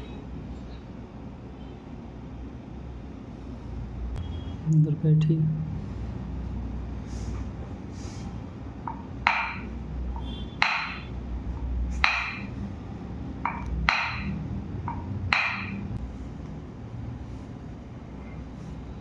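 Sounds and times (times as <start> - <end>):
sharp clicking knocks: 8.8 - 11.2, 12.0 - 12.6, 13.4 - 16.0.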